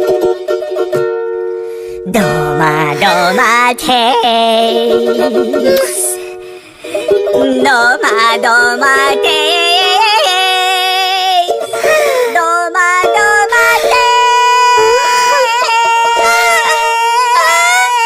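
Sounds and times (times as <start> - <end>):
nursery rhyme music: 1.6 - 9.0.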